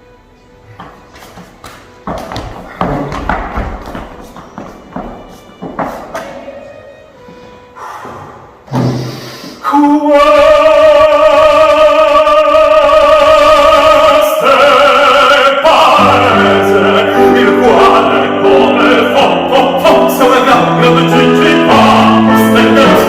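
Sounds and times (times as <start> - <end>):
operatic voice singing: 9.6 - 23.0
musical accompaniment with bass: 15.8 - 23.0.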